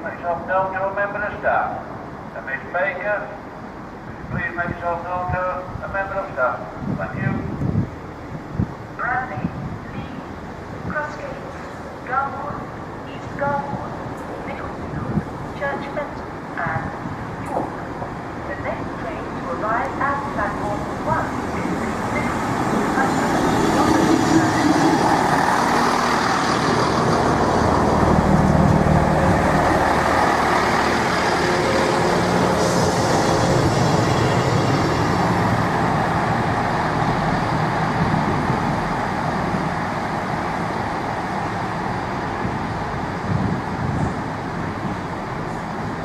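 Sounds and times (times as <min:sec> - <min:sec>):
diesel train engines rumbling: 0:00.0 - 0:46.0.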